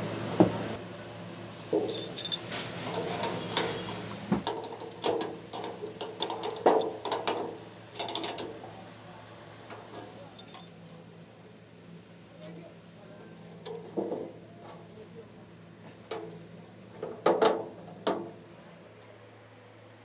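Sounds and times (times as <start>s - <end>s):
metallic clinks and knocks: 1.8s - 2.5s, 10.4s - 10.8s.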